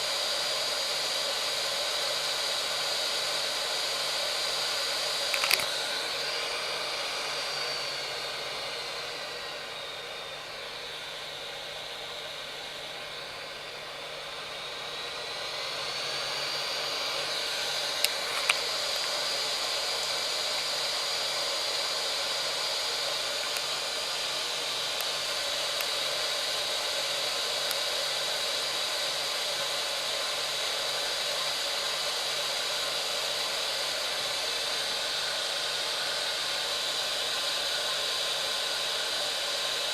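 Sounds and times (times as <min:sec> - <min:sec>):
hot-air gun fan whine: 0:00.0 - 0:39.9
sharp clicks: 0:05.3 - 0:05.7.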